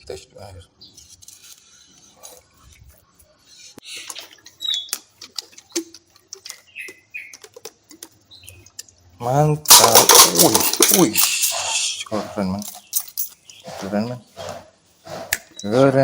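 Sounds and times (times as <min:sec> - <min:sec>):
plastic toy clicks and knocks: 0:09.7 - 0:11.6.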